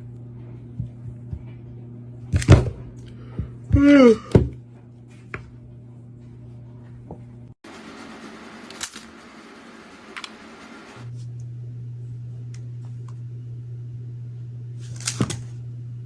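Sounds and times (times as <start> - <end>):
low electrical hum: 0.0 - 7.6, 8.5 - 16.0
person exclaiming: 3.7 - 4.4.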